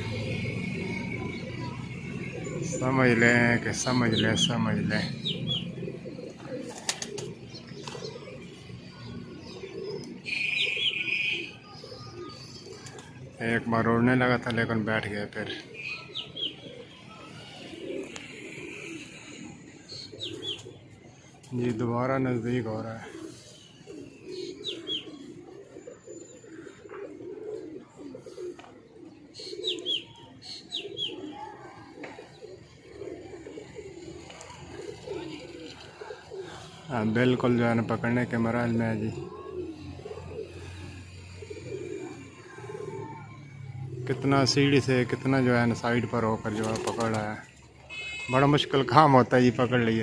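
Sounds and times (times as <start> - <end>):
pigeons cooing: 0.0 - 50.0
small birds chirping: 0.0 - 50.0
loud high steady bird call: 9.8 - 12.4, 47.8 - 48.6.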